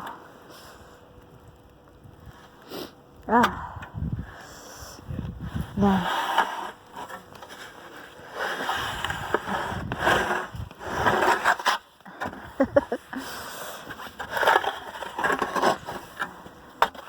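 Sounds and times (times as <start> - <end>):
snow shovel scraping snow: 5.4 - 11.9, 13.4 - 16.2.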